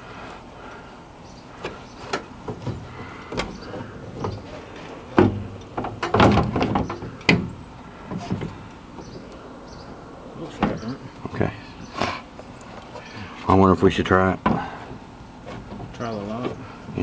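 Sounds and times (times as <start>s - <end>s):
clattering knocks: 1.6s - 9.2s.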